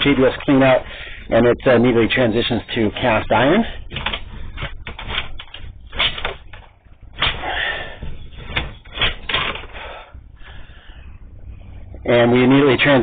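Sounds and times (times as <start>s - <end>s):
camera cable rattling in pipe: 3.1s - 10.0s.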